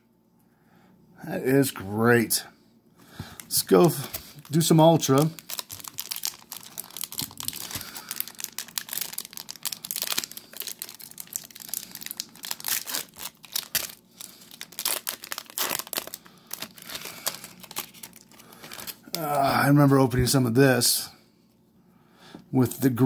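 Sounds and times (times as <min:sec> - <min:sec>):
plastic wrapper tearing and crumpling: 0:03.4 - 0:19.4.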